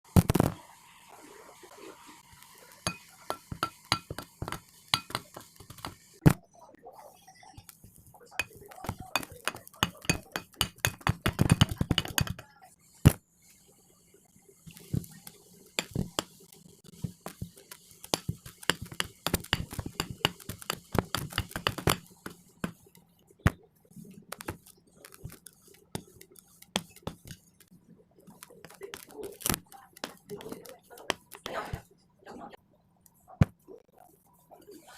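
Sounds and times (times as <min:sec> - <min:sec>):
kinetic sand crunching clicks: 0:28.3 - 0:31.5.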